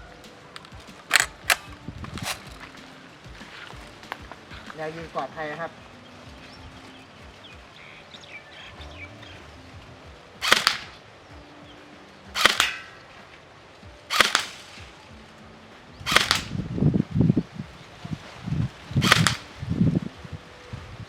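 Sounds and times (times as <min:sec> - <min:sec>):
low thumps: 0:00.0 - 0:05.2
airsoft rifle shots: 0:00.6 - 0:02.8, 0:10.4 - 0:11.0, 0:12.4 - 0:13.1, 0:14.1 - 0:15.0, 0:16.1 - 0:16.6, 0:19.0 - 0:19.5.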